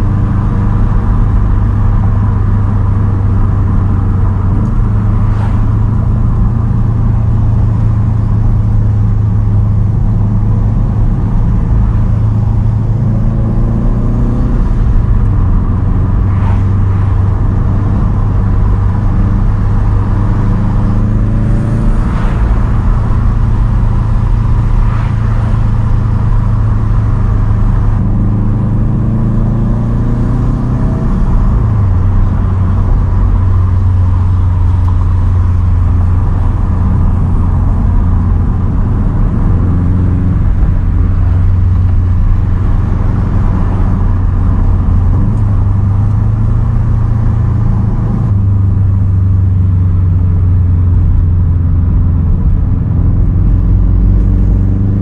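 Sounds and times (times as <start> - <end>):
car engine droning: 0.0 - 55.0.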